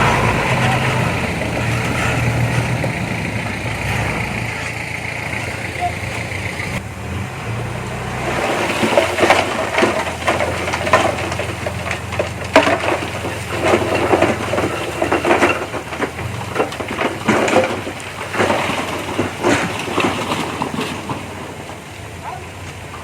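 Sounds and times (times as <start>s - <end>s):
diesel engine running: 0.0s - 23.0s
crunches and clanks of soil and rock: 8.2s - 23.0s.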